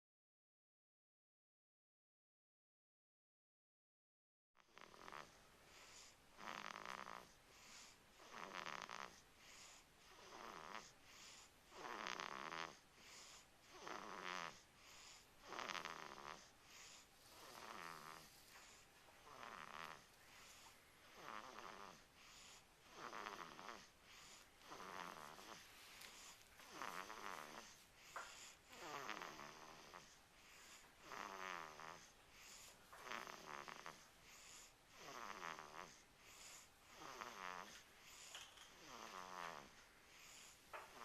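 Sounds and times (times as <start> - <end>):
baby snoring softly: 4.6 - 41.0.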